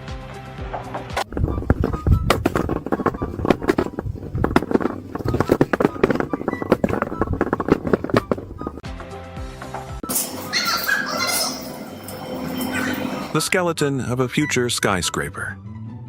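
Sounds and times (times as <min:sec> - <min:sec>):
rapid clattering knocks: 0:01.3 - 0:08.8.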